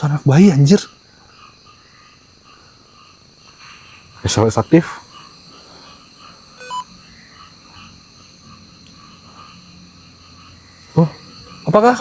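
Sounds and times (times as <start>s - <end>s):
night insects chorus: 0.0s - 12.0s
electronic device beep: 6.6s - 6.9s.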